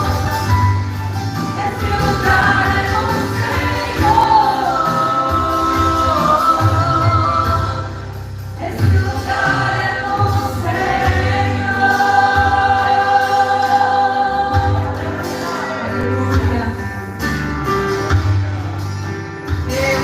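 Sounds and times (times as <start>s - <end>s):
gospel band playing live: 0.0s - 20.0s
singers holding long notes: 1.5s - 17.0s.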